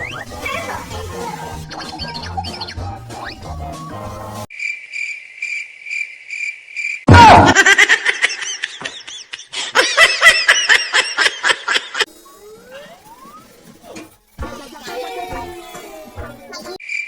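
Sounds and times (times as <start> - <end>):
loud laughter: 7.1 - 12.1.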